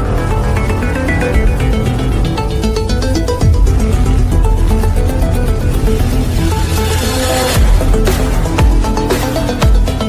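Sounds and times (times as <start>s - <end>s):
electronic music with beat: 0.0s - 10.0s
rising noisy swell: 0.1s - 9.2s.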